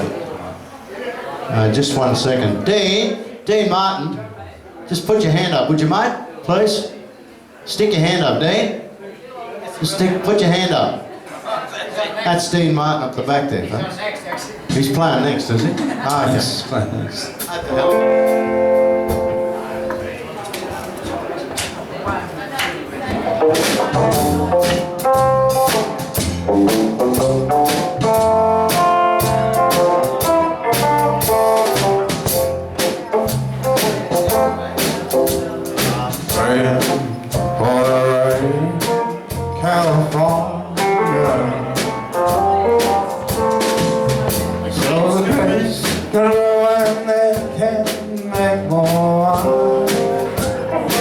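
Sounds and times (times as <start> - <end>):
live band playing: 17.0 - 51.0
drum kit beat: 17.3 - 51.0.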